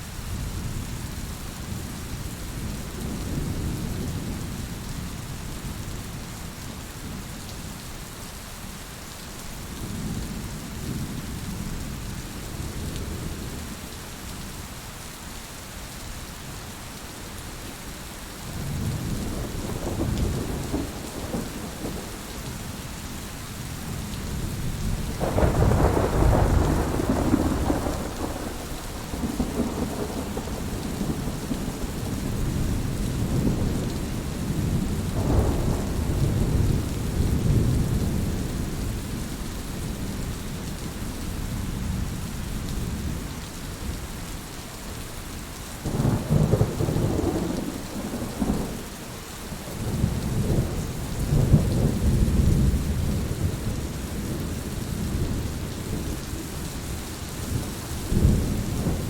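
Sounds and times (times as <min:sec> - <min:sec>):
heavy rain: 0:00.0 - 0:59.0
rolling thunder: 0:18.6 - 0:22.8, 0:23.9 - 0:38.7, 0:45.9 - 0:48.9, 0:49.8 - 0:56.2, 0:57.5 - 0:59.0.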